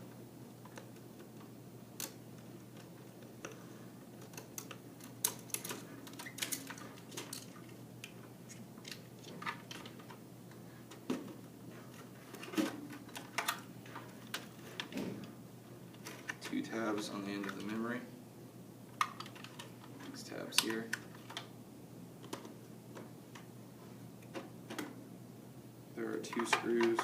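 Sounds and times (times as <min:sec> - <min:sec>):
computer parts clicking and tapping: 0:04.2 - 0:10.2, 0:12.4 - 0:15.0, 0:19.0 - 0:21.5, 0:26.2 - 0:27.0.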